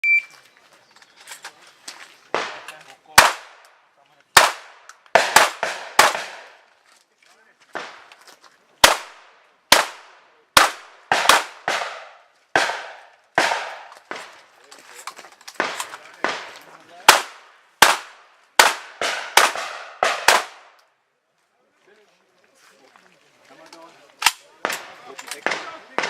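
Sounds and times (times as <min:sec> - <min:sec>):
shotgun shots: 0:02.3 - 0:03.6, 0:04.4 - 0:06.6, 0:08.8 - 0:14.4, 0:15.6 - 0:20.8, 0:24.2 - 0:26.0.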